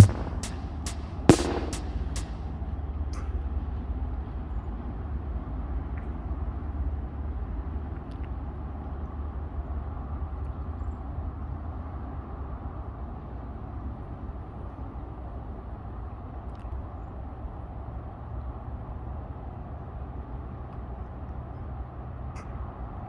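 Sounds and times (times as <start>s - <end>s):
sharp knock: 0.0s - 2.4s
low outdoor rumble: 0.0s - 2.6s.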